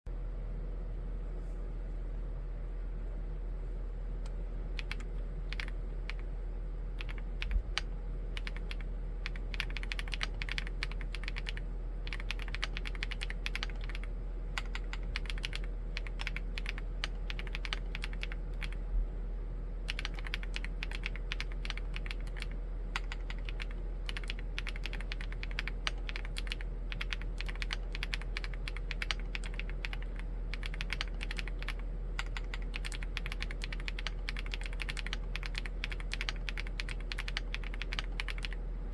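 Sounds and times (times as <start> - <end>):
steady low hum: 0.1 - 38.9
typing on mechanical keyboard: 4.8 - 6.2, 7.0 - 18.8, 19.9 - 38.6.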